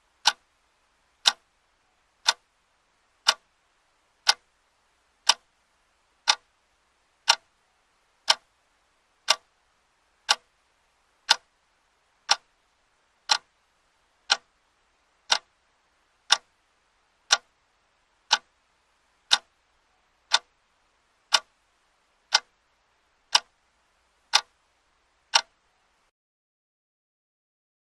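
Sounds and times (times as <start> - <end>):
clock ticking: 0.2 - 0.5, 1.2 - 1.5, 2.2 - 2.5, 3.2 - 3.5, 4.2 - 4.5, 5.2 - 5.5, 6.2 - 6.5, 7.2 - 7.6, 8.2 - 8.5, 9.2 - 9.5, 10.2 - 10.5, 11.3 - 11.5, 12.2 - 12.6, 13.2 - 13.6, 14.2 - 14.6, 15.2 - 15.6, 16.2 - 16.6, 17.2 - 17.6, 18.2 - 18.6, 19.3 - 20.6, 21.2 - 21.6, 22.3 - 22.6, 23.3 - 23.6, 24.3 - 24.6, 25.3 - 25.6.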